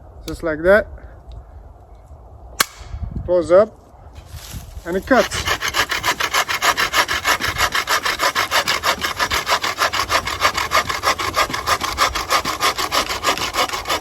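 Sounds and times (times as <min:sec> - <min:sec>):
hand saw cutting branch: 0:04.2 - 0:14.0.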